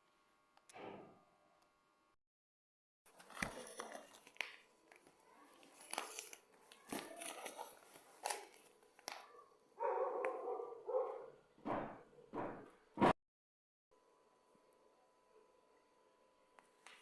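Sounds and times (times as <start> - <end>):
crinkling: 3.1 - 9.3.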